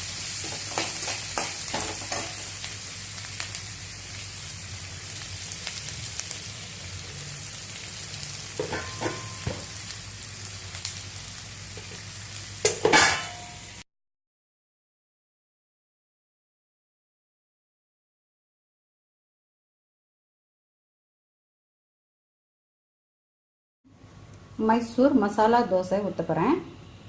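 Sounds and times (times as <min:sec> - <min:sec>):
onions sizzling in oil: 0:00.0 - 0:13.8
spoon scraping a pan: 0:00.4 - 0:02.5, 0:08.6 - 0:09.7
spoon knocking: 0:08.6 - 0:09.7.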